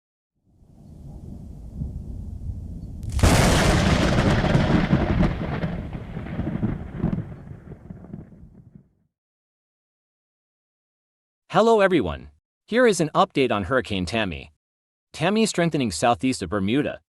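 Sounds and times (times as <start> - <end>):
thunder rumbling: 1.0 - 8.9
loud thunder crack: 1.1 - 8.9.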